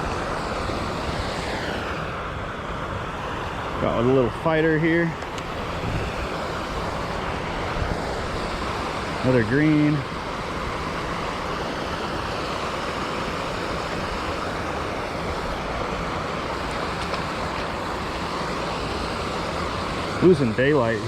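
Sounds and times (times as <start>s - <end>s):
water spilling over small waterfall: 5.4s - 21.0s.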